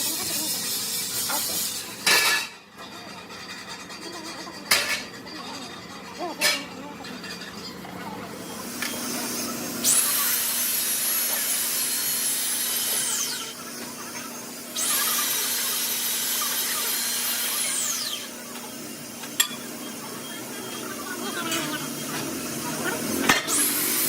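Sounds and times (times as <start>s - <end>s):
power tool whining: 8.3s - 24.0s.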